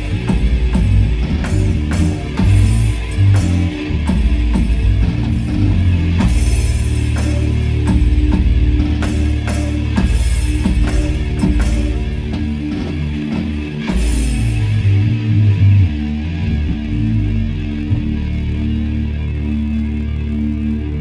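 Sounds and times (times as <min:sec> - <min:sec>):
live rock band playing: 0:00.0 - 0:16.2
heavy bass: 0:00.0 - 0:21.0.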